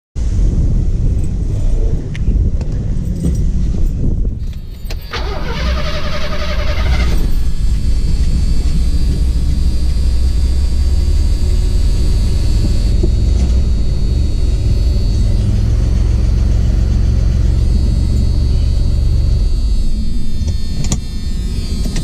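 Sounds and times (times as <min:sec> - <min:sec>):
car engine idling: 0:04.4 - 0:22.0
starter motor cranking: 0:04.4 - 0:22.0.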